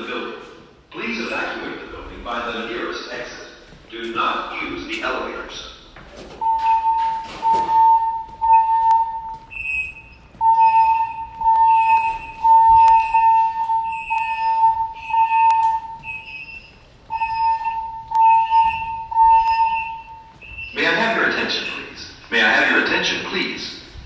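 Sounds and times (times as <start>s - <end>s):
spoken evacuation messages: 0.0s - 24.0s
fire alarm pulsing tone: 6.3s - 22.2s.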